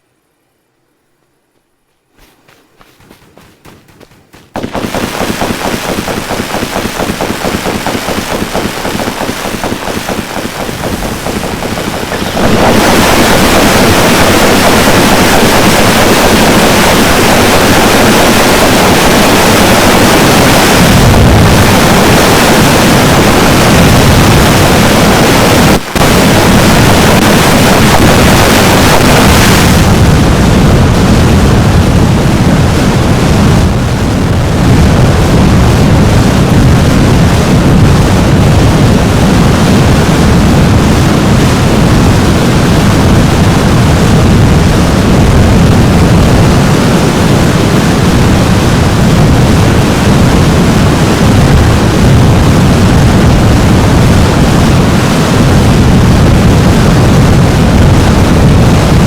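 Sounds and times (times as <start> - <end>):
firework fountains crackling: 3.4 - 30.2.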